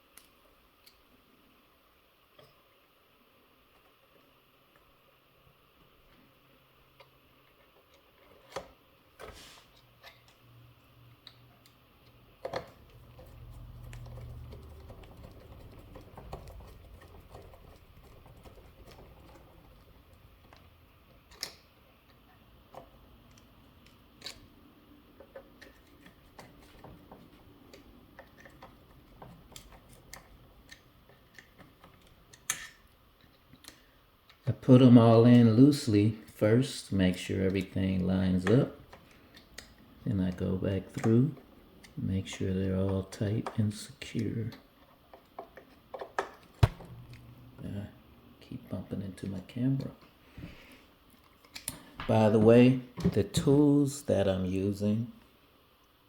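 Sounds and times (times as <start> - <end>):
low rumble of handling: 12.1 - 21.3.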